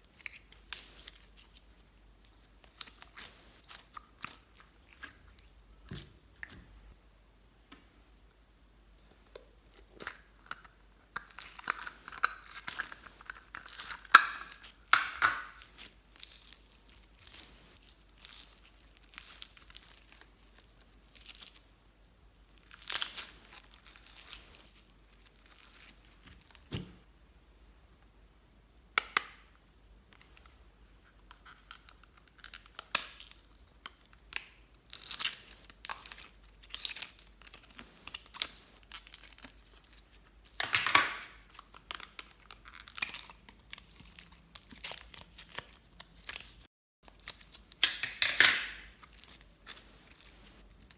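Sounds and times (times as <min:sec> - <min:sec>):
slime crackling and popping: 0:09.8 - 0:21.7, 0:22.5 - 0:26.8, 0:31.7 - 0:50.9.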